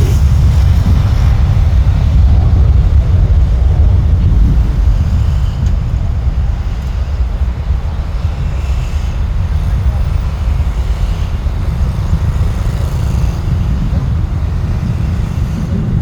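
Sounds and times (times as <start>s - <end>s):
airliner engines rumbling: 0.0s - 16.0s.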